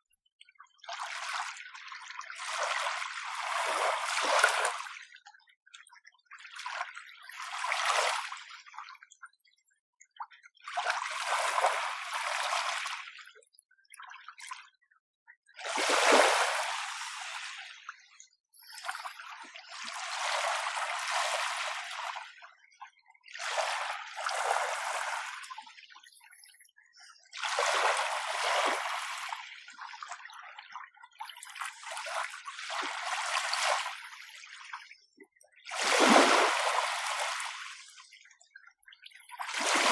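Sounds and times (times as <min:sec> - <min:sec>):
gentle waves washing on shore: 0:02.4 - 0:04.9, 0:15.6 - 0:17.8, 0:19.8 - 0:22.2, 0:23.5 - 0:25.6, 0:27.4 - 0:29.4, 0:35.7 - 0:37.9, 0:39.5 - 0:39.9.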